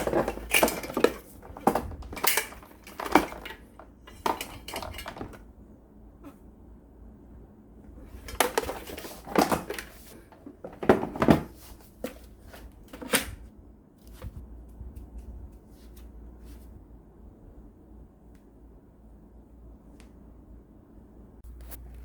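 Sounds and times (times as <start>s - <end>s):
hand tools clattering and knocking: 0.0s - 5.4s, 8.2s - 12.2s.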